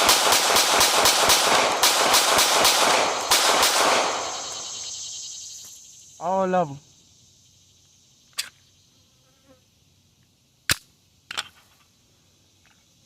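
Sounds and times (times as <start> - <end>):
gunshot cracks: 0.0 - 4.6.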